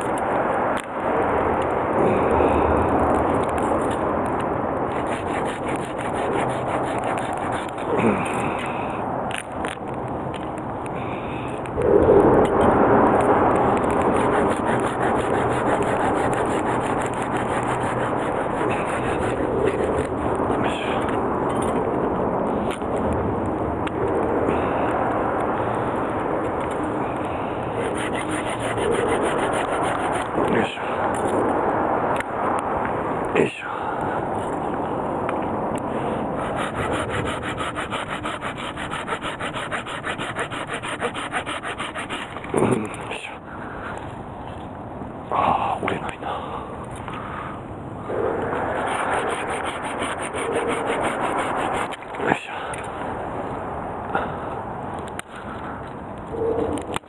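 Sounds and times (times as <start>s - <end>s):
hand saw cutting wood: 4.9s - 8.7s, 13.6s - 21.8s, 26.6s - 31.4s, 35.9s - 43.2s, 48.1s - 52.5s.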